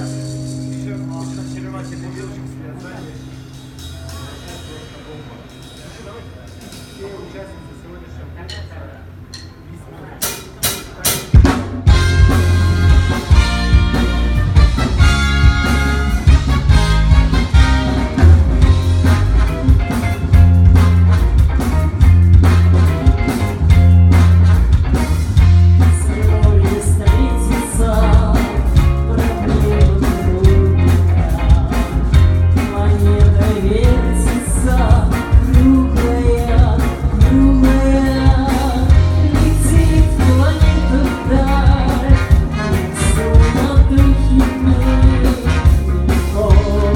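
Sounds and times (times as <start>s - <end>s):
guitar: 0.0s - 6.9s, 10.6s - 46.9s
heavy bass: 0.0s - 7.8s, 10.6s - 46.9s
drums: 0.0s - 46.9s
person singing: 25.8s - 46.9s.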